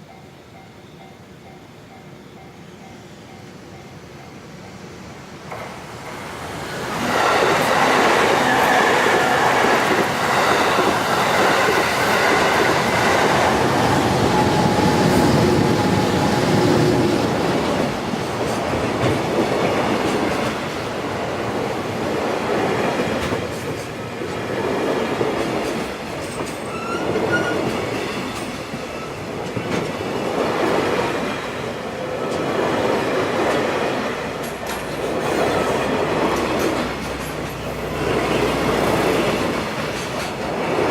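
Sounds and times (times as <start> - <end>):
train rumbling past: 0.0 - 40.9
wheel squeal: 26.6 - 28.4.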